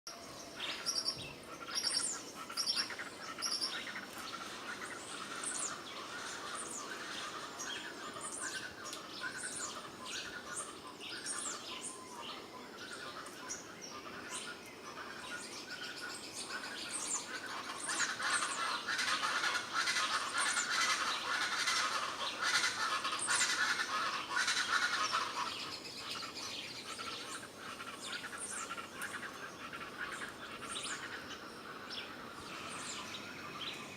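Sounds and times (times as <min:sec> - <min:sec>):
birds chirping and calling: 0:00.1 - 0:33.9.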